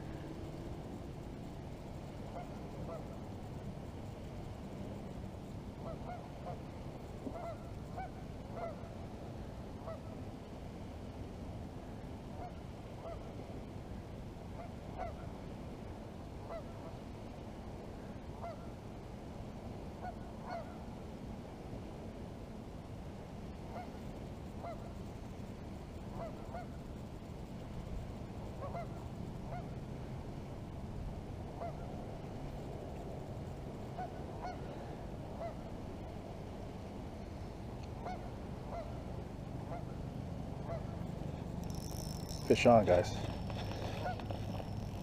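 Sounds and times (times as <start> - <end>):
low background rumble: 0.0 - 18.7, 21.5 - 45.0
waterfowl giving short calls: 7.3 - 8.9, 26.1 - 26.8, 28.6 - 29.7, 41.6 - 45.0.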